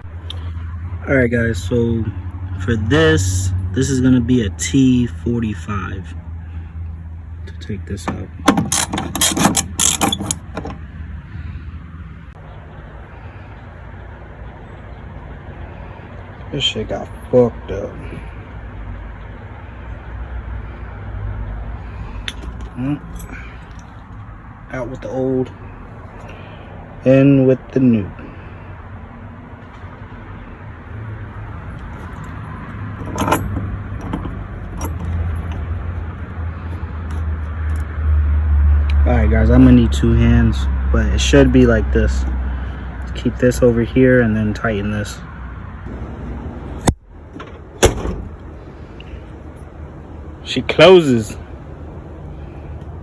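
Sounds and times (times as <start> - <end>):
low outdoor background rumble: 0.0 - 53.0
metal parts clinking: 8.4 - 10.8, 22.0 - 24.0, 31.8 - 36.3, 37.1 - 37.9.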